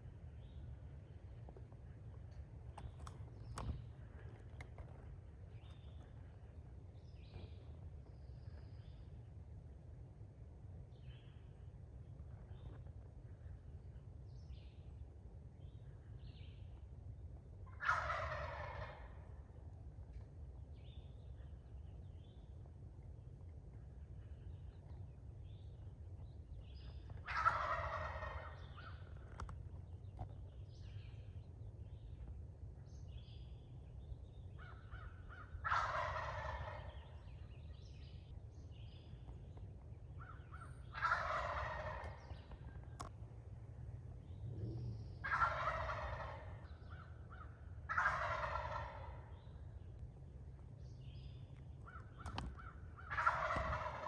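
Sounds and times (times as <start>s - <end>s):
turkey gobbling: 17.7s - 19.3s, 27.2s - 29.2s, 34.6s - 37.4s, 40.2s - 42.6s, 45.2s - 49.6s, 51.8s - 54.0s.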